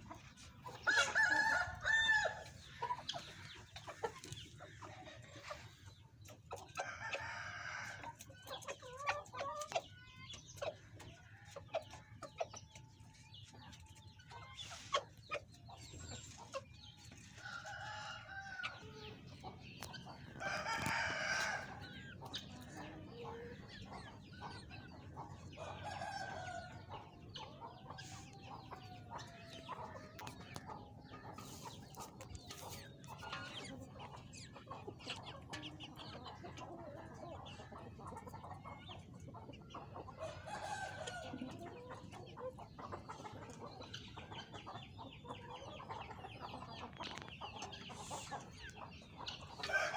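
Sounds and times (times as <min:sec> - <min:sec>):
chickens clucking: 0:00.0 - 0:49.9
rooster crowing: 0:01.0 - 0:02.4.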